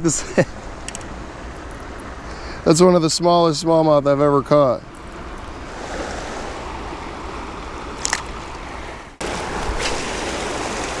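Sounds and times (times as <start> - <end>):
water rushing in creek cascade: 5.2 - 11.0.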